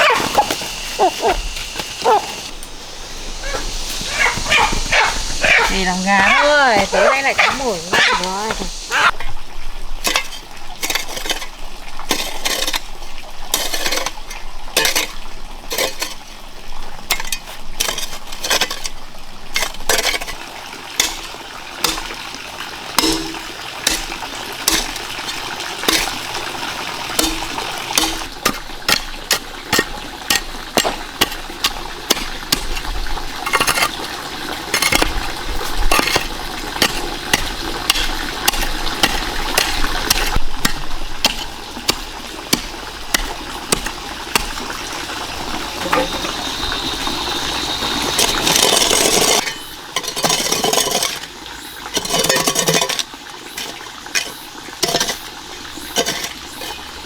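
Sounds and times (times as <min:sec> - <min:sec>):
water splashing: 0:00.0 - 0:09.1.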